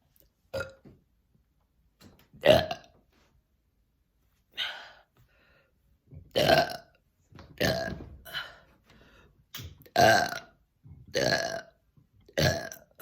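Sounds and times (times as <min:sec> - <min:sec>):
person burping: 0:00.5 - 0:00.9, 0:02.4 - 0:02.9, 0:06.3 - 0:07.0, 0:07.6 - 0:08.6, 0:09.8 - 0:13.0.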